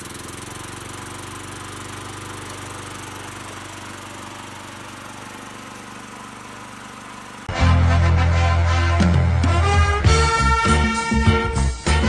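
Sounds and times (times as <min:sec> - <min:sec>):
lawnmower engine running: 0:00.0 - 0:07.6.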